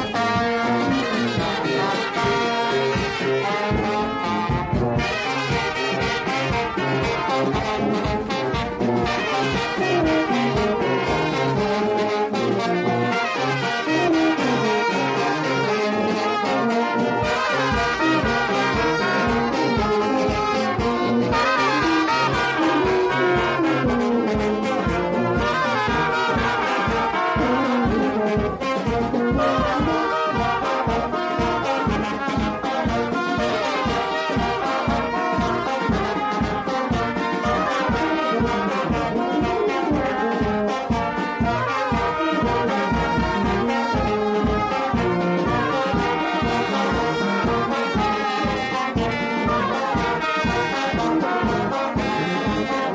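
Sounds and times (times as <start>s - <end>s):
brass band playing: 0.0s - 52.9s
regular beat: 0.0s - 52.9s.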